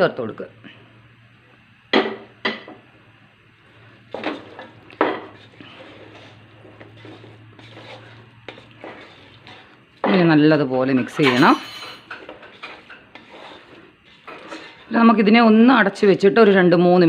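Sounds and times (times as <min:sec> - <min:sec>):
utensil clinking against pot: 0:10.9 - 0:13.6.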